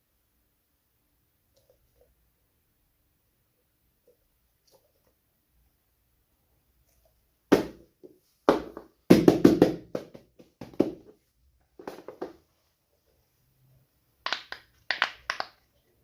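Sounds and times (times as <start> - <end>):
fidget toys tapping: 14.2 - 15.6.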